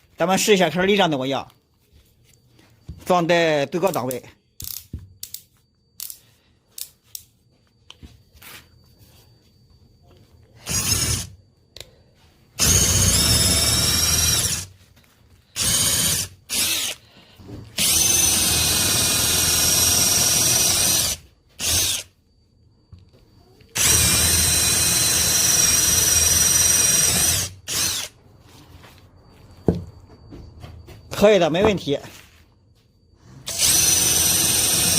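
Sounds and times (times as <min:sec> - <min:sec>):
cordless drill motor whining: 0:10.5 - 0:11.4, 0:12.6 - 0:14.7, 0:15.4 - 0:22.1, 0:23.8 - 0:28.1, 0:33.4 - 0:34.9.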